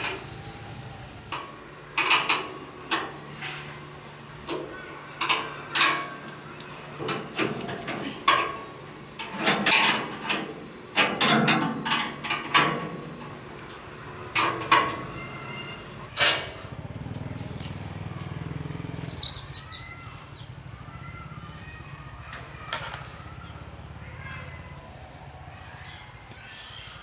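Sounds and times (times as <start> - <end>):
metal knocks and clanks: 6.9 - 13.4, 14.3 - 18.4.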